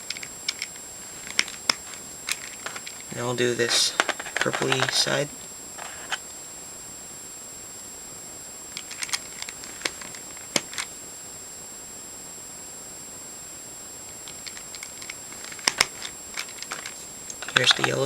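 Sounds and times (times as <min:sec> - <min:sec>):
small clicks and taps: 0:00.0 - 0:03.0, 0:03.9 - 0:05.2, 0:08.8 - 0:10.9, 0:14.2 - 0:18.0
sharp plastic clicks: 0:00.0 - 0:06.2, 0:08.8 - 0:10.9, 0:14.2 - 0:18.0
steady high-pitched whine: 0:00.0 - 0:18.0.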